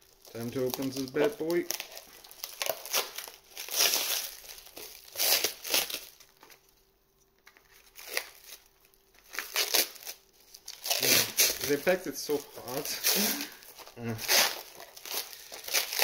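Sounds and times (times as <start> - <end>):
packaging crinkling and tearing: 0.0 - 6.7, 7.4 - 16.0.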